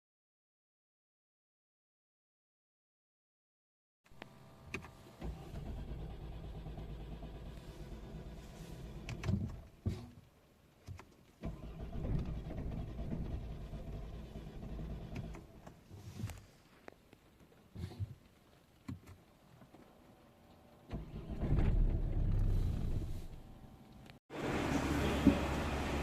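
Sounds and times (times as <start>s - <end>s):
car engine starting and stopping: 4.2s - 10.0s, 11.4s - 15.8s, 20.8s - 26.0s.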